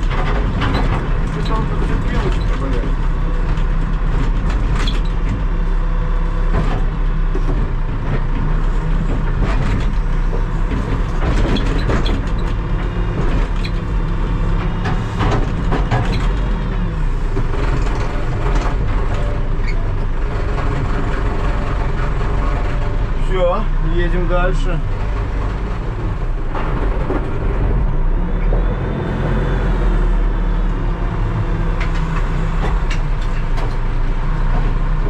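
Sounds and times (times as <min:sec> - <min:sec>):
machine clanks and knocks: 0:00.0 - 0:05.4, 0:06.5 - 0:23.2, 0:24.3 - 0:27.9
diesel engine running: 0:00.0 - 0:35.0.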